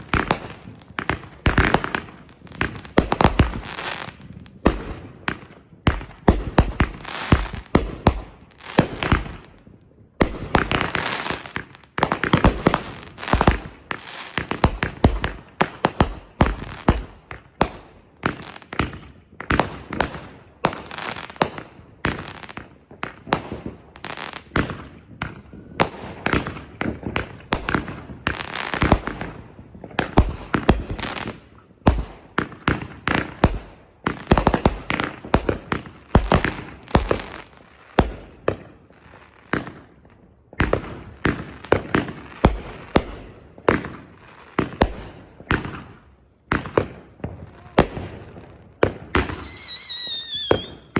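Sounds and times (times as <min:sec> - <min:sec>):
fireworks launching and bursting: 0:00.0 - 0:50.9.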